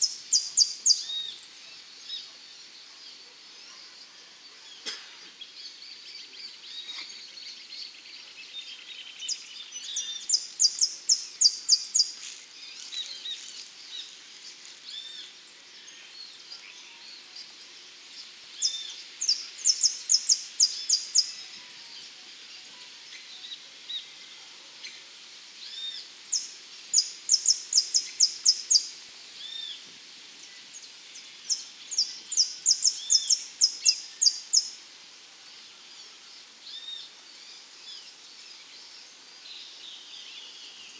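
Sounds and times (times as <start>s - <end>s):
other birds chirping: 15.2s - 22.2s, 24.9s - 40.9s.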